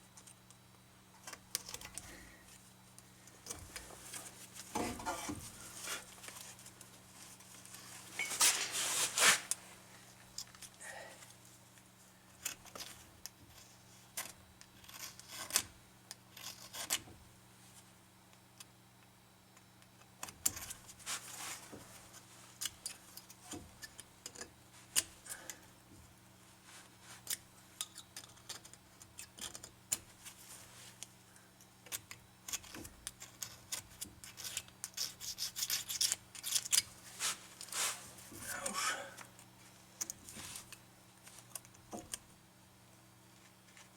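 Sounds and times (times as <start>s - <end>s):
hand tool scraping metal parts: 4.7s - 6.1s, 32.5s - 39.0s.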